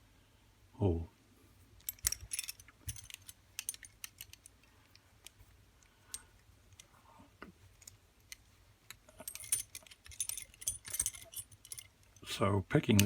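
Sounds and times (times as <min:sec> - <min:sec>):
handcuffs clicking: 0:01.8 - 0:06.9, 0:09.2 - 0:12.2.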